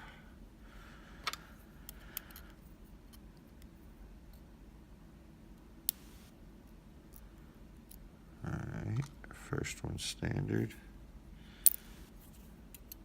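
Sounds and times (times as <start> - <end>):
faint clicks of lock pins: 1.2 - 3.7, 12.7 - 13.0.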